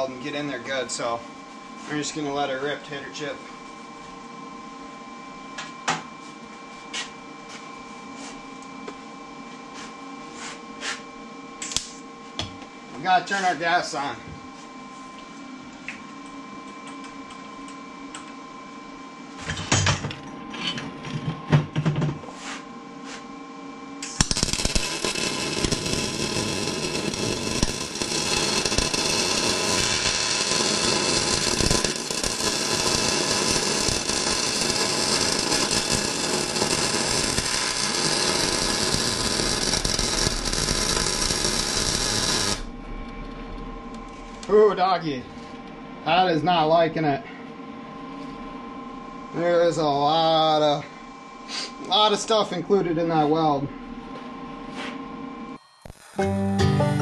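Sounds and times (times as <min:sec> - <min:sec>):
welding arc crackling: 0:24.0 - 0:42.8, 0:55.8 - 0:56.4.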